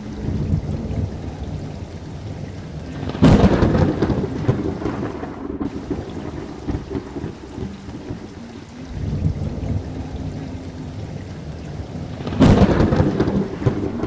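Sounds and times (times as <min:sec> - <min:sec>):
low thunder rumble: 0:00.0 - 0:14.0
rain-like hiss: 0:00.0 - 0:14.0
loud thunderclap: 0:00.2 - 0:08.2, 0:11.8 - 0:14.0.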